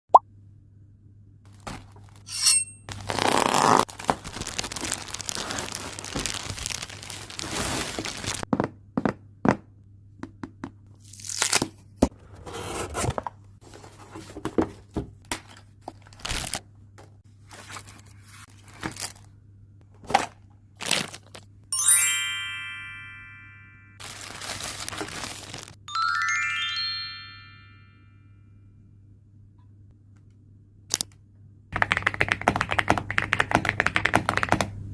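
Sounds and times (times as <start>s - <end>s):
plastic packaging crinkling and tearing: 2.9s - 8.5s, 16.1s - 16.6s, 20.8s - 21.4s, 24.0s - 25.8s
bright chime: 21.7s - 24.0s, 25.9s - 28.3s
rising run of chime notes: 21.8s - 24.0s, 25.9s - 28.2s.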